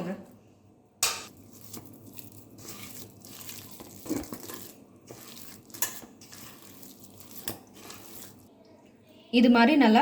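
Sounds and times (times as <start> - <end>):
potato mashing in bowl: 1.4 - 8.5.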